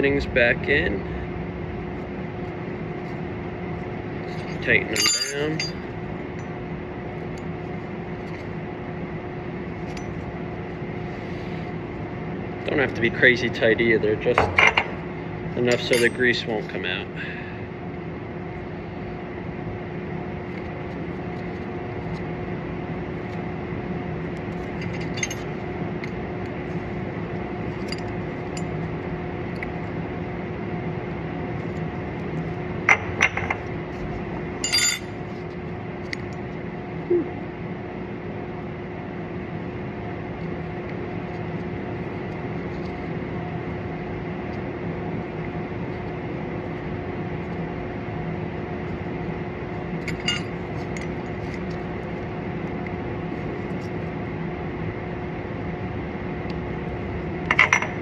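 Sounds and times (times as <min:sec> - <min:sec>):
steady hum: 0:00.7 - 0:06.0, 0:14.4 - 0:16.4, 0:34.3 - 0:35.2
metal tools clinking: 0:04.8 - 0:05.9, 0:15.7 - 0:16.4, 0:24.8 - 0:25.5, 0:34.6 - 0:35.2, 0:50.0 - 0:51.1.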